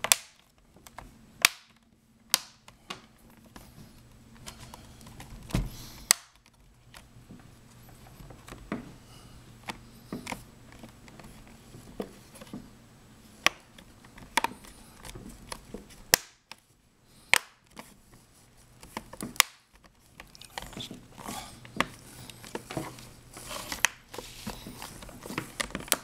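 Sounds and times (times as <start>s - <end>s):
plastic clips snapping into place: 0.0s - 3.1s, 5.2s - 6.6s, 13.4s - 16.6s, 17.3s - 17.9s, 18.8s - 20.9s.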